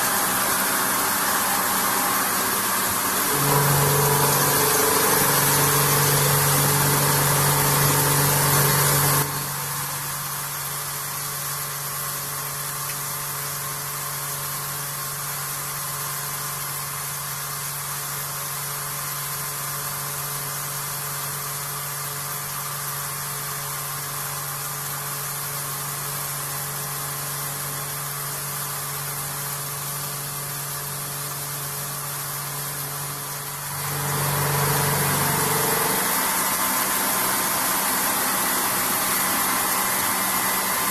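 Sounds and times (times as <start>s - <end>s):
milling machine humming: 0.0s - 12.4s, 31.8s - 40.9s.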